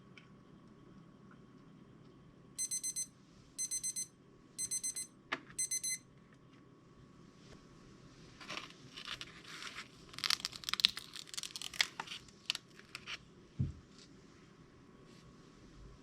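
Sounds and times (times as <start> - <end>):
plastic packaging crinkling: 8.4 - 13.2.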